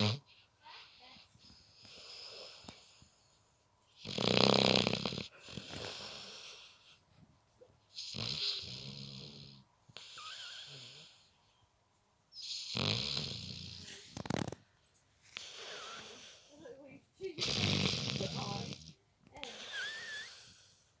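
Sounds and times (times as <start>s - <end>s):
rattling snore: 12.6s - 14.6s, 17.4s - 19.0s.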